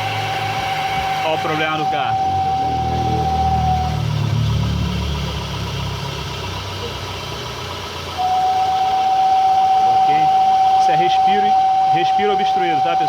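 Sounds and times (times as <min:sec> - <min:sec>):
steady whistle: 0:00.0 - 0:04.3, 0:08.2 - 0:13.0
car engine idling: 0:00.0 - 0:13.0.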